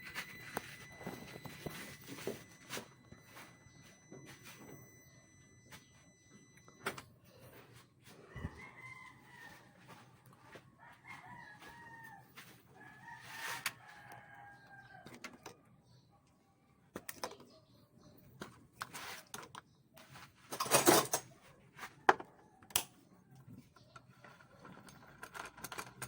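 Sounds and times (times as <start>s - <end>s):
faint rooster crowing: 8.1s - 15.7s.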